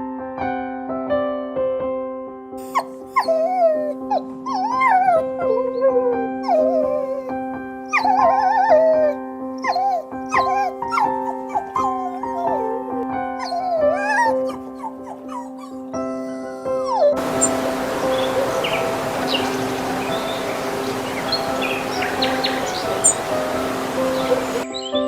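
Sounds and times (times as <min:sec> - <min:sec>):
background music with held notes: 0:00.0 - 0:25.0
dog whimpering and yipping: 0:02.6 - 0:24.6.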